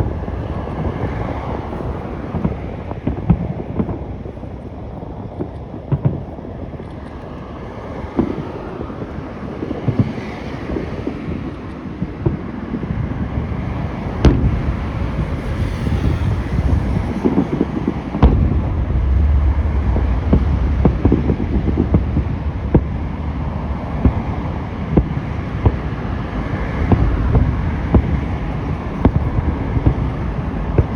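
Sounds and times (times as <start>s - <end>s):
low rumble: 16.0s - 30.9s.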